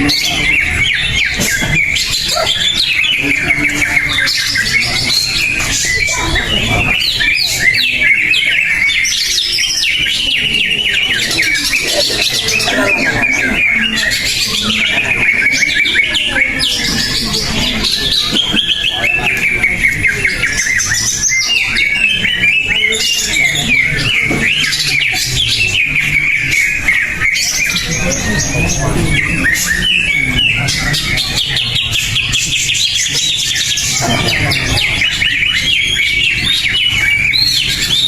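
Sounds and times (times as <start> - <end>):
bird singing chirps and trills: 0.0 - 38.0.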